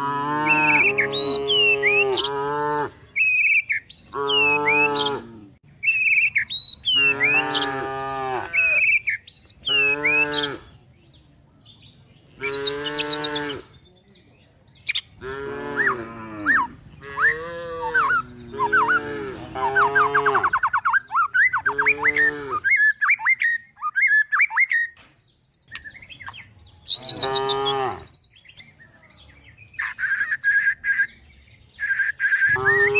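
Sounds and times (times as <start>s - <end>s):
cattle mooing: 0.0s - 3.1s, 4.1s - 5.6s, 7.0s - 8.8s, 9.7s - 10.6s, 12.4s - 13.7s, 15.2s - 20.5s, 21.7s - 22.7s, 27.0s - 28.1s, 32.5s - 32.9s
birds chirping: 0.0s - 32.9s.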